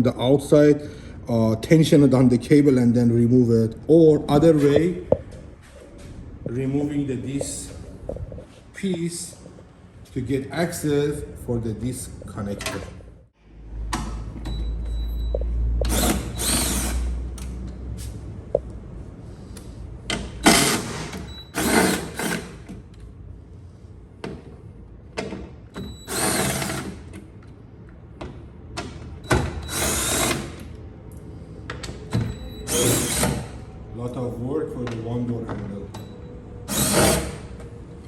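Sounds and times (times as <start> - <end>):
power drill bursts: 15.9 - 17.1, 20.4 - 22.6, 26.0 - 27.0, 29.6 - 30.6, 32.6 - 33.6, 36.7 - 37.5.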